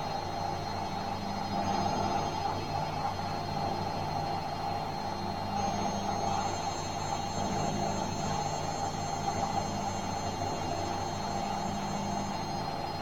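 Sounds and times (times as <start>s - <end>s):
high-pitched whine: 0.0s - 13.0s.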